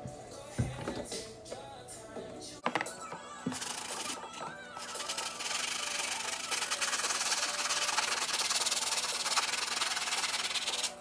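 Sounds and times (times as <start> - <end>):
rapid rubbing on a sneaker: 4.8 - 11.0.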